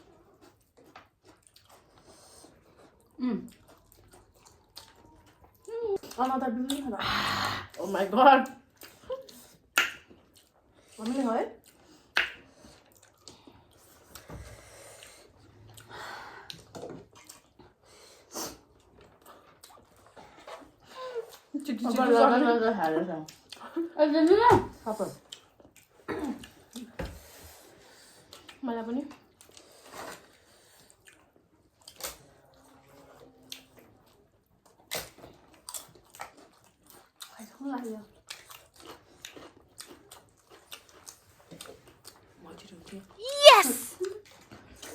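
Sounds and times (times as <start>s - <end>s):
wet chewing smacks: 0.0s - 7.0s, 8.4s - 22.0s, 22.8s - 23.8s, 24.9s - 44.9s
breathy sniffs and huffs: 7.0s - 7.8s, 13.5s - 16.7s.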